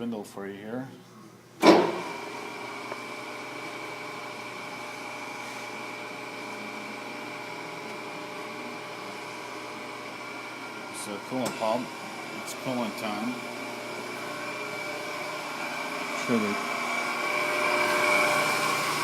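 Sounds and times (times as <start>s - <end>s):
motor switch clunk: 1.6s - 2.1s, 11.4s - 11.8s
grinder motor whining: 2.0s - 19.0s.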